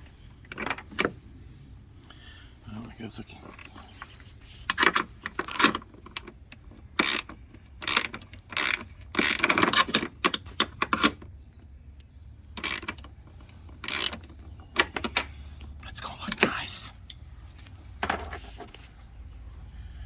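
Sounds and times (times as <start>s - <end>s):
socket ratchet clicking: 7.0s - 11.2s, 12.6s - 15.3s.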